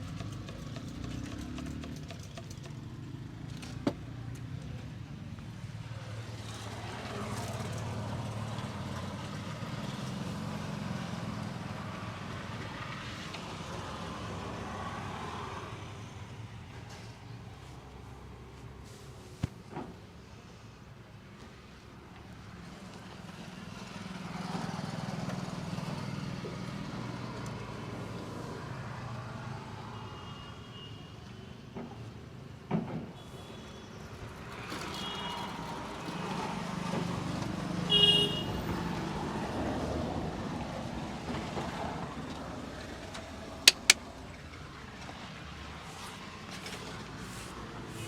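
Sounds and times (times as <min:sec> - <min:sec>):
road traffic passing: 0:00.0 - 0:21.8, 0:35.5 - 0:48.0
car horn toots: 0:37.9 - 0:38.5
sharp snaps: 0:43.7 - 0:44.0.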